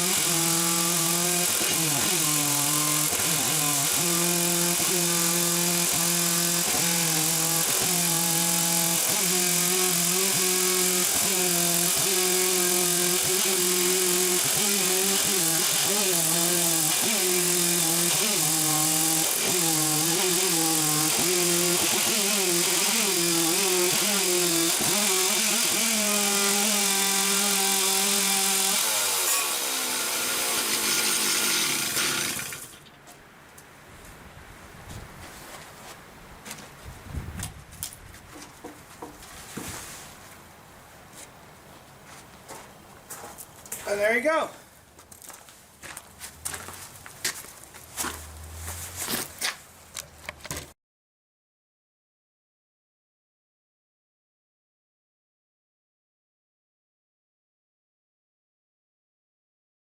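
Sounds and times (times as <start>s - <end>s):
chainsaw cutting log: 0.0s - 32.8s, 46.4s - 50.7s.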